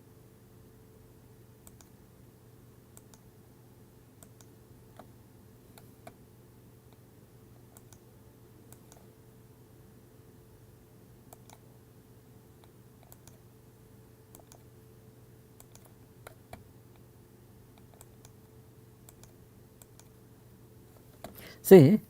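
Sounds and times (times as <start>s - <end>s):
low steady hum: 0.0s - 22.0s
computer mouse clicks: 1.6s - 1.9s, 3.0s - 3.3s, 4.2s - 5.1s, 7.7s - 8.1s, 8.7s - 9.1s, 11.3s - 11.6s, 12.6s - 13.4s, 14.3s - 14.7s, 15.6s - 17.1s, 17.8s - 18.4s, 19.0s - 20.2s.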